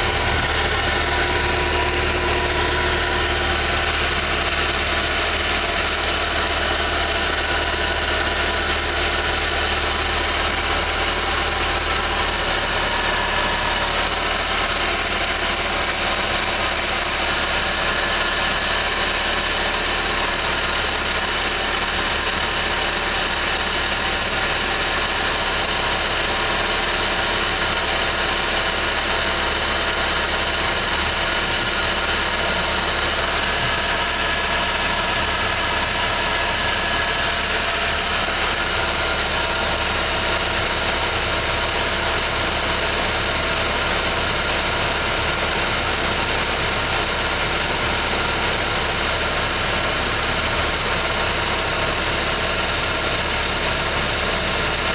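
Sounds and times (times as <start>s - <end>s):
car engine running: 0.0s - 22.5s.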